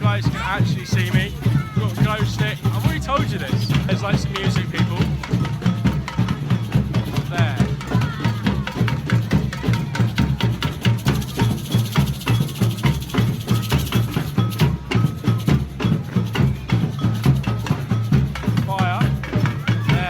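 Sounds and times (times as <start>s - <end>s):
fast drum beat: 0.0s - 20.0s
woodblock strikes: 0.0s - 20.0s.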